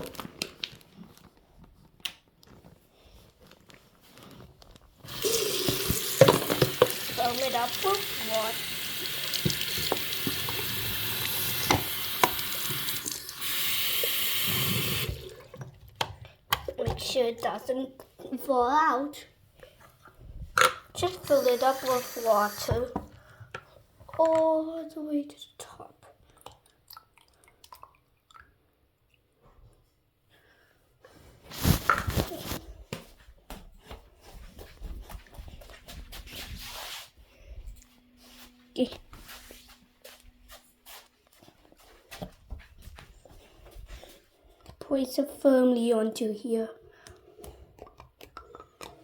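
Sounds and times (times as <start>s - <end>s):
tap water filling bottle: 5.0s - 15.8s, 21.0s - 23.2s.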